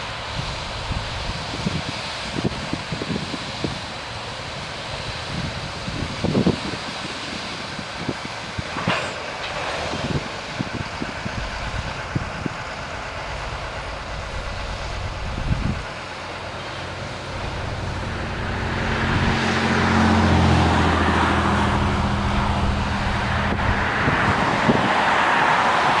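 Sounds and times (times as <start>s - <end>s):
diesel engine drone: 0.0s - 26.0s
metal clanks and knocks: 8.8s - 9.8s
low hum: 11.2s - 24.4s.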